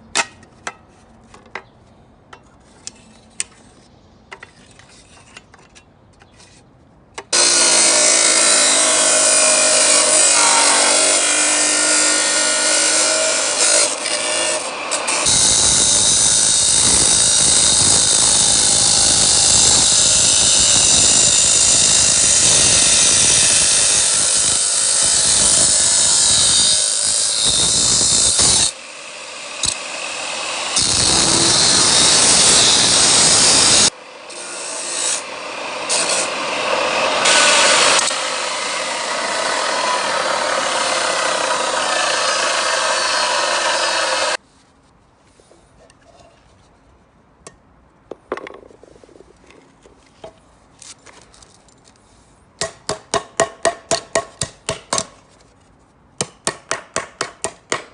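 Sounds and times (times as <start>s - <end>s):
tool grinding into material: 29.5s - 44.4s.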